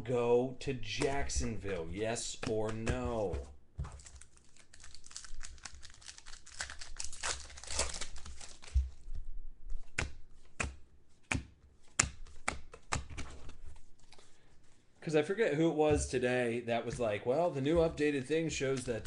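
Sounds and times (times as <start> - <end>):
foil pack crinkling and tearing: 4.0 - 9.0.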